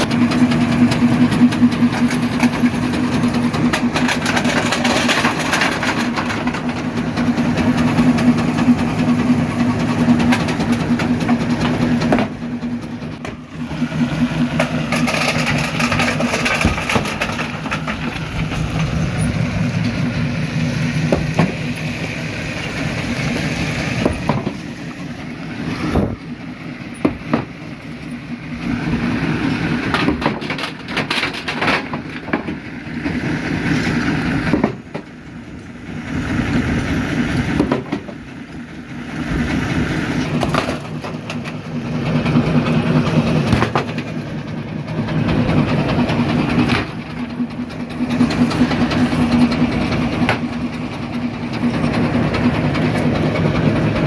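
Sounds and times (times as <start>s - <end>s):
rock cracking in crusher: 0.0s - 8.4s, 13.2s - 20.0s, 39.2s - 52.2s.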